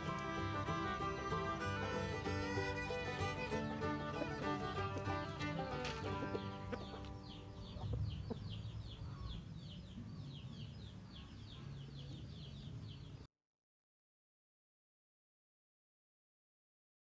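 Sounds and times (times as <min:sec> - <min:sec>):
background music: 0:00.0 - 0:06.9
chicks peeping: 0:05.9 - 0:13.0.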